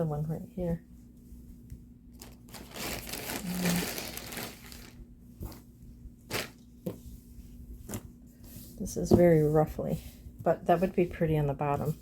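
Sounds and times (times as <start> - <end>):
plastic bag crinkling: 2.1 - 5.0, 6.3 - 6.6.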